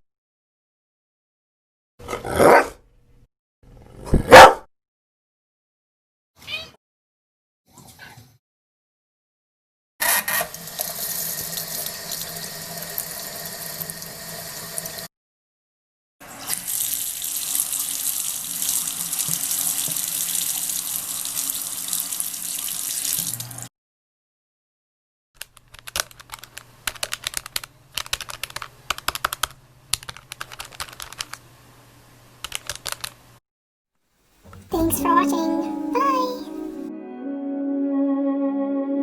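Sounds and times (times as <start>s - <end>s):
water running from a tap: 10.5s - 15.1s, 16.3s - 23.7s
computer keyboard typing: 25.5s - 31.4s, 32.4s - 33.2s.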